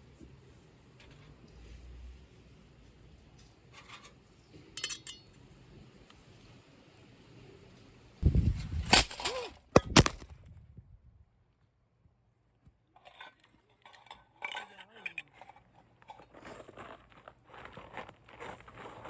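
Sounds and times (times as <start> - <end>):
hard objects clinking and clattering: 4.8 - 5.4, 13.0 - 16.8.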